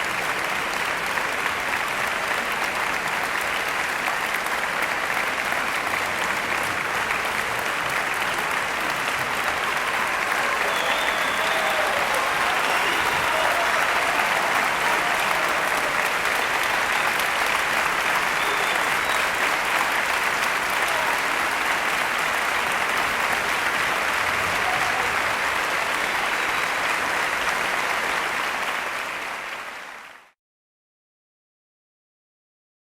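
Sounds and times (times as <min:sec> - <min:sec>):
crowd applauding: 0:00.0 - 0:30.4.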